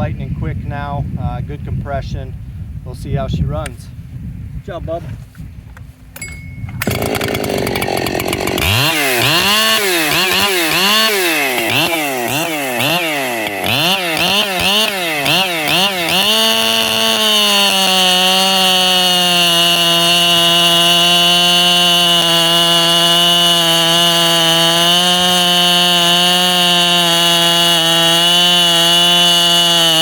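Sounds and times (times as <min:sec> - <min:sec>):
chainsaw idling and revving: 0:06.8 - 0:30.0.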